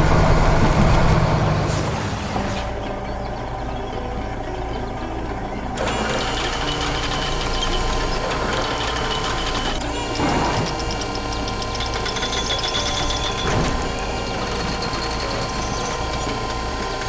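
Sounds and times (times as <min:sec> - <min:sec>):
heavy vehicle engine running: 0:00.0 - 0:17.0.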